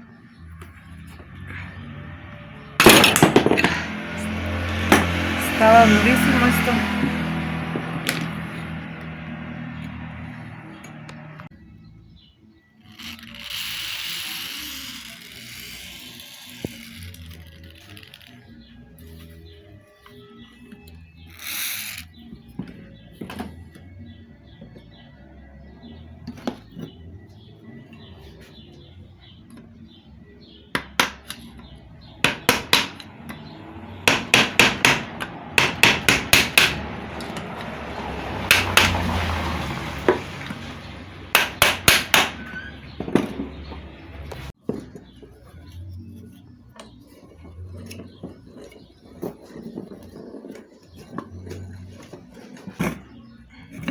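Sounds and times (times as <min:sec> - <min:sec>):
hammer striking metal: 0:04.8 - 0:05.4, 0:32.2 - 0:33.1, 0:34.1 - 0:36.8, 0:41.3 - 0:42.6.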